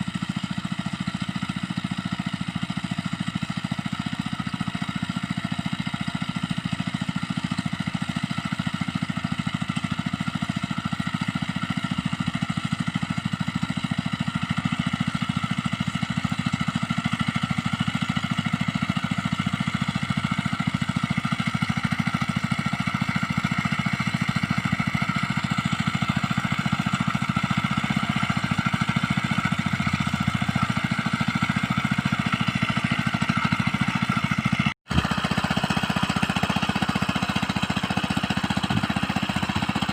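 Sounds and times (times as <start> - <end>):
small engine running steadily: 0.0 - 39.9.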